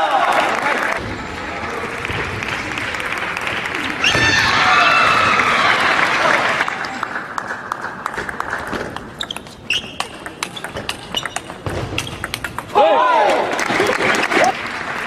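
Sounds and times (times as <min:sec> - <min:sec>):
crowd applause: 0:00.0 - 0:08.7, 0:12.8 - 0:15.0
table tennis ball clicks: 0:08.9 - 0:12.7.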